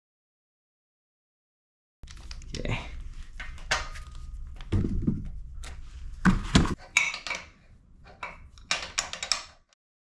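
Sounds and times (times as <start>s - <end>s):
metal fittings clinking and knocking: 6.8s - 9.7s.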